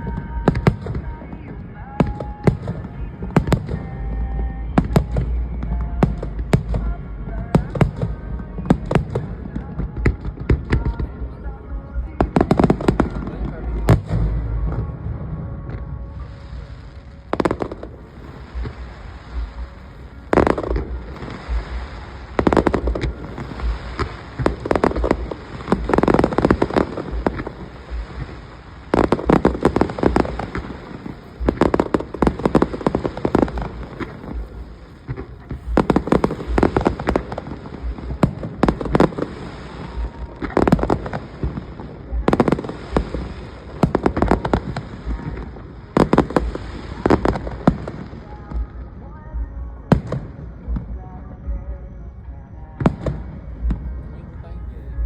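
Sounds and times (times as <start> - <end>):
firework shells booming: 17.3 - 48.6.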